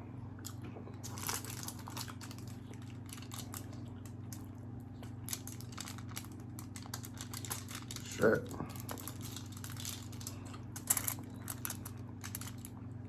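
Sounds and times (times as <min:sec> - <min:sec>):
low electrical hum: 0:00.0 - 0:13.0
plastic clicking and crinkling: 0:05.3 - 0:12.7.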